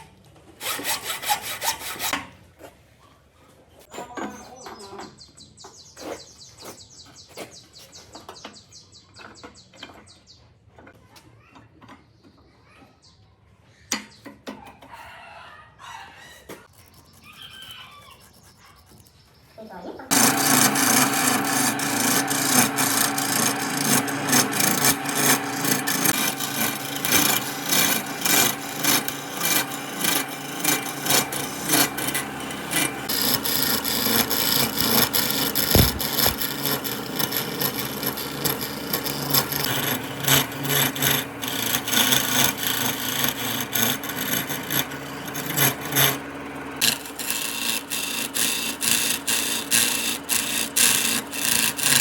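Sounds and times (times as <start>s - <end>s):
tool scraping wood: 0.5s - 2.2s, 16.5s - 19.2s, 20.1s - 52.0s.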